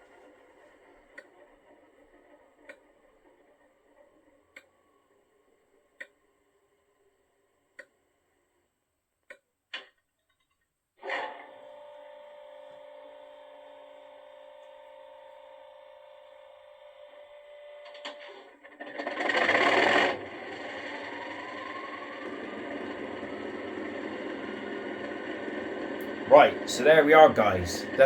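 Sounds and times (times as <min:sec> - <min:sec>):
steady hum: 0:26.0 - 0:28.0.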